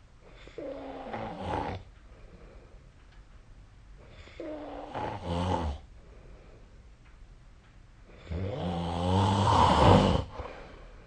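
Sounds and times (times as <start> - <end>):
person snoring: 0.4 - 1.9, 4.1 - 5.9, 8.1 - 10.7.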